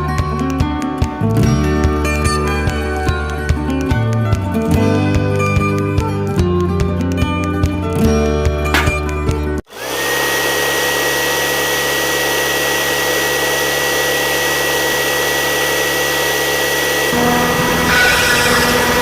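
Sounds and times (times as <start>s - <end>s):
small electric motor whining: 16.7s - 19.0s.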